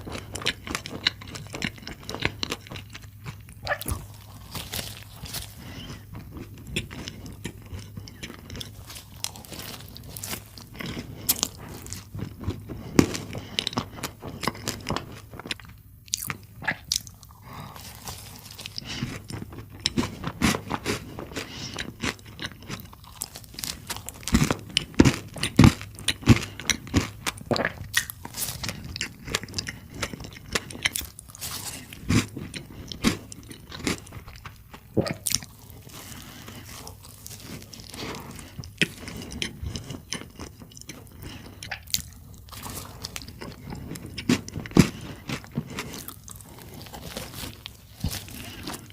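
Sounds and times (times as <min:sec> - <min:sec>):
crunching bites and chewing: 0:00.0 - 0:48.9.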